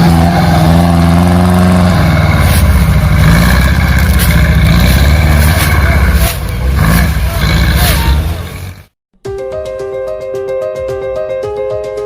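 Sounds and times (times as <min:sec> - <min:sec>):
vehicle engine revving: 0:00.0 - 0:09.0.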